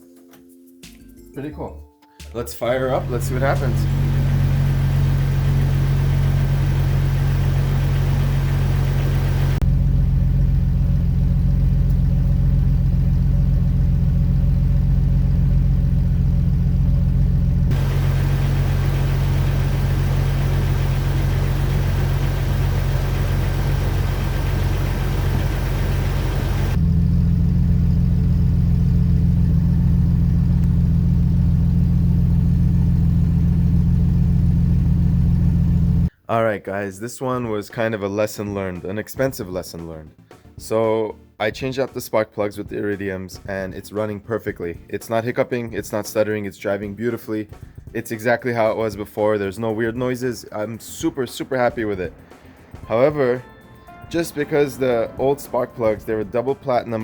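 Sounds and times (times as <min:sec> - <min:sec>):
car engine running: 0:02.7 - 0:36.1.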